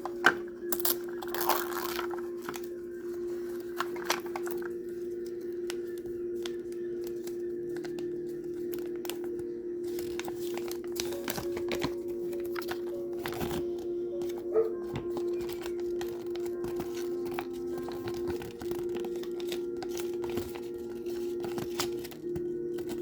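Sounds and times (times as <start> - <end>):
plastic packaging tearing and crinkling: 0.0 - 2.7, 3.6 - 4.8, 15.1 - 23.0
low background tone: 0.0 - 23.0.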